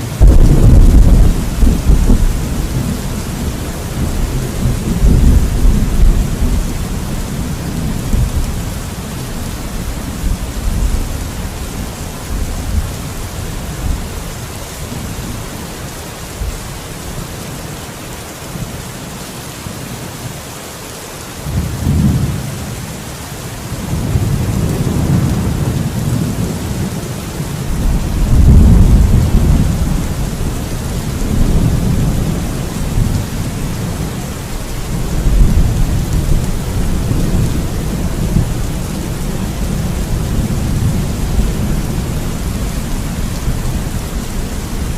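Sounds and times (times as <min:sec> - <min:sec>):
rolling thunder: 0:00.0 - 0:14.2, 0:23.8 - 0:27.1, 0:27.7 - 0:44.9
rain falling: 0:00.0 - 0:44.9.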